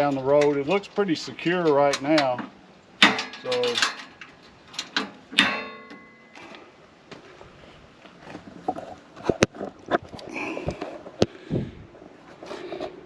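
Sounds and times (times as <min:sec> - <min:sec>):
clicks and knocks on metal table: 0:01.6 - 0:06.1
short metallic ring: 0:05.4 - 0:06.4.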